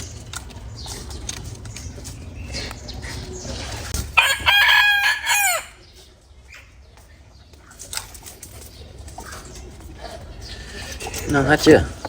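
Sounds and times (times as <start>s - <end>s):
rooster crowing: 4.2s - 5.8s.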